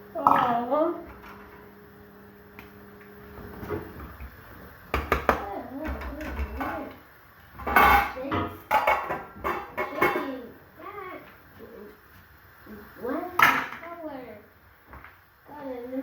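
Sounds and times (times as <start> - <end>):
voices: 0.1 - 1.1, 5.3 - 7.0, 7.7 - 8.7, 9.7 - 12.0, 12.6 - 14.5
pot and utensils clattering: 5.0 - 6.9, 7.6 - 10.4.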